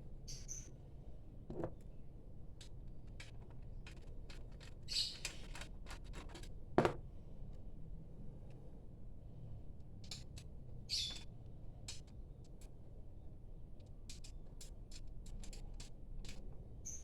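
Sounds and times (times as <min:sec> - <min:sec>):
small clicks and taps: 0:13.8 - 0:16.6.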